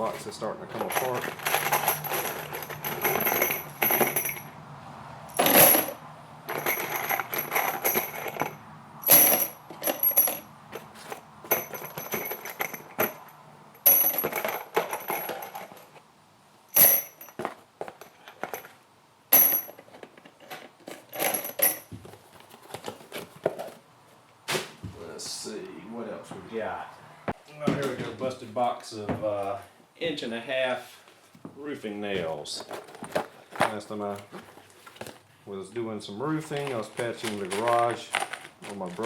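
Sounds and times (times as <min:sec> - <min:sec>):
nails clattering into plastic bins: 0:00.7 - 0:04.5, 0:05.3 - 0:16.0, 0:16.8 - 0:18.8, 0:19.4 - 0:22.0.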